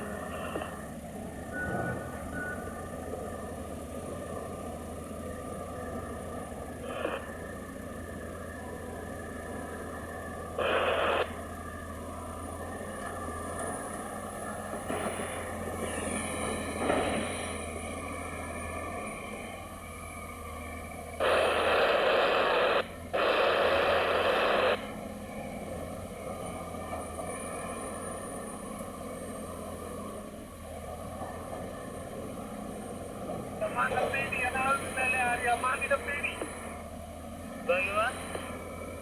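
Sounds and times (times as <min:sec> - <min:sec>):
heavy machinery engine running: 0:00.0 - 0:39.0
short noisy bursts: 0:06.8 - 0:07.6, 0:10.5 - 0:11.4, 0:21.2 - 0:25.0.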